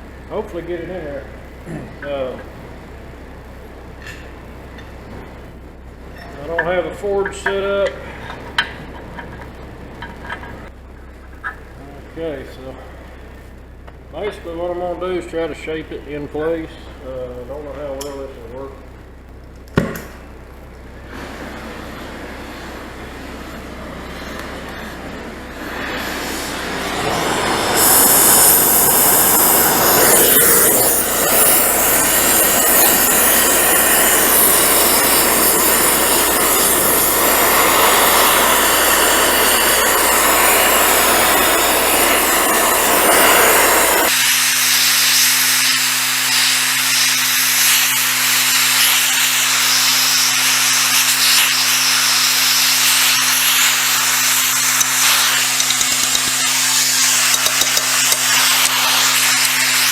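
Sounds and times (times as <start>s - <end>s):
low hum: 0.0s - 59.9s
gas torch flame hissing: 20.9s - 59.9s.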